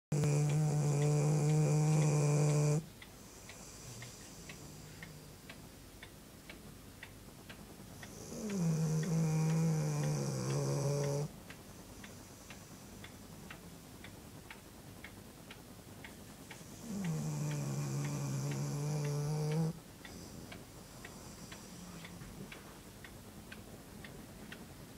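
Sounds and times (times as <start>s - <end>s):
dog snoring: 0.1s - 5.4s, 8.1s - 11.3s, 16.6s - 20.4s
faint regular ticking: 0.1s - 24.9s.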